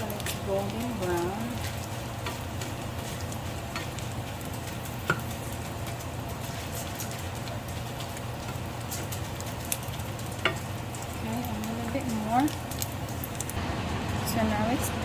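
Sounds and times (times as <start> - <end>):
fish frying in oil: 0.0 - 15.0.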